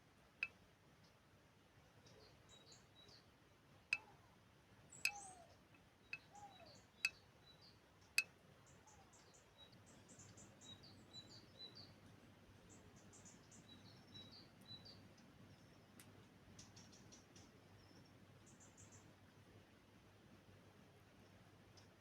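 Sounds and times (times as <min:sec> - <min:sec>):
faint high bird chirps: 0:04.0 - 0:07.8, 0:08.7 - 0:12.0, 0:12.7 - 0:16.0.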